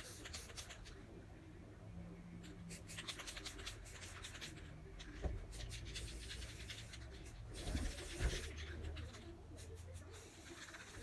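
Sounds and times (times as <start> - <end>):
spray paint can hissing: 0.0 - 0.7.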